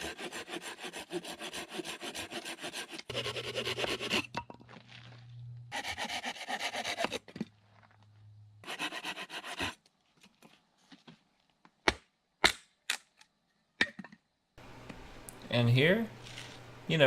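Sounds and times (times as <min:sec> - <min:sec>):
dry wood being rasped: 0:00.0 - 0:04.3, 0:05.7 - 0:07.2, 0:08.6 - 0:09.8.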